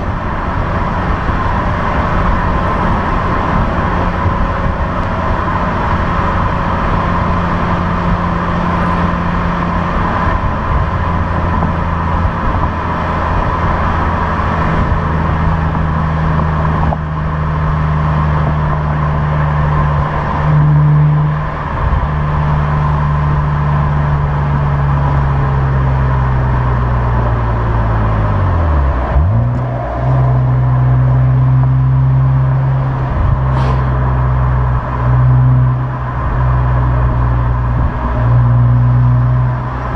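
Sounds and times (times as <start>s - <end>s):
car engine running: 0.0s - 39.9s.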